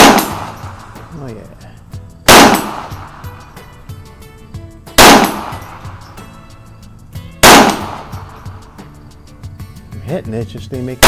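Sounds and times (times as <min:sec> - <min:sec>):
pistol shot with echo: 0:00.0 - 0:00.6, 0:02.3 - 0:03.1, 0:05.0 - 0:05.7, 0:07.4 - 0:08.2.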